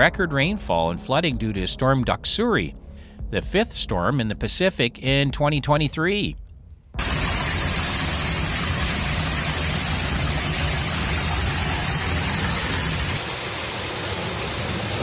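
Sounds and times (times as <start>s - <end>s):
heavy rain pouring: 7.0s - 15.0s.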